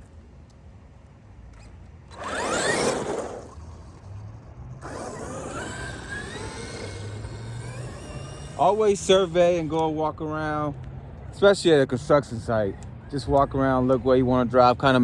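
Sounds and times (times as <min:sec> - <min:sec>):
tyres on dirt: 0:01.5 - 0:09.9
electric motor whining: 0:02.1 - 0:04.2, 0:04.8 - 0:09.4.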